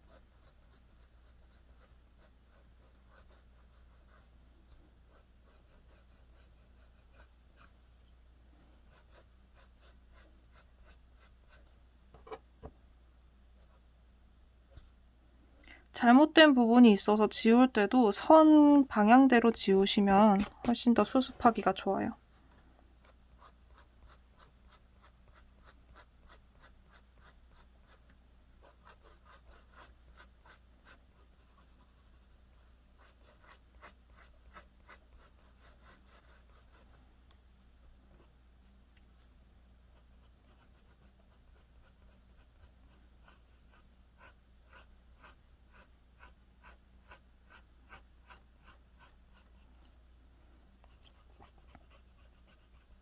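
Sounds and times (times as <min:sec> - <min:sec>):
pencil strokes on paper: 0:00.0 - 0:04.3, 0:05.1 - 0:08.0, 0:08.8 - 0:11.7, 0:22.1 - 0:36.9, 0:39.9 - 0:50.0, 0:50.8 - 0:53.0.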